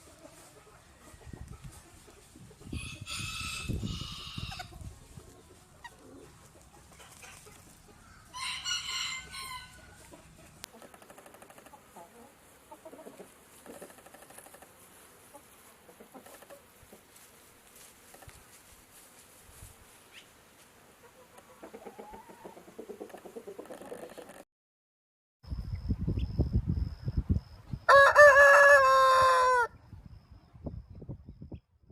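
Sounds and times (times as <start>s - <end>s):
chickens clucking: 0.0s - 17.3s, 20.9s - 24.4s
rooster crowing: 2.7s - 4.7s, 8.3s - 10.0s, 27.9s - 29.8s.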